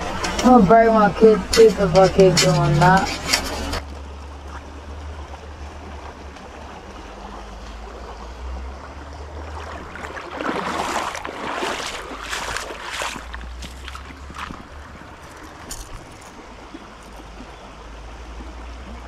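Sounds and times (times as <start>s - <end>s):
creek running: 0.0s - 19.0s
scratchy rustling noise: 1.4s - 3.8s, 11.6s - 16.4s.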